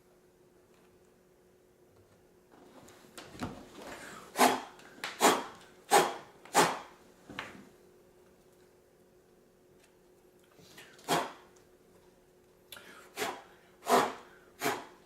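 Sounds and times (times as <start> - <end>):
rasping strokes: 13.2 - 15.0.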